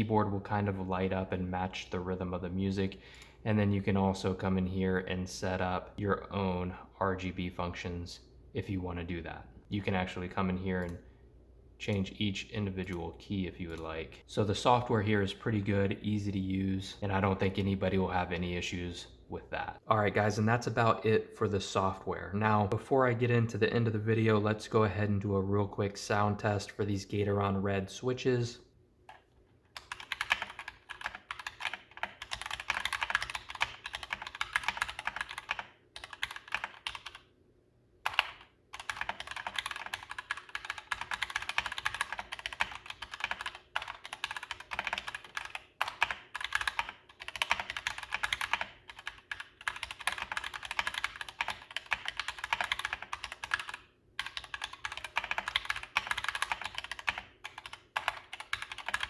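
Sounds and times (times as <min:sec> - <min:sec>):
mechanical keyboard typing: 0:29.1 - 0:37.3, 0:38.0 - 0:59.0.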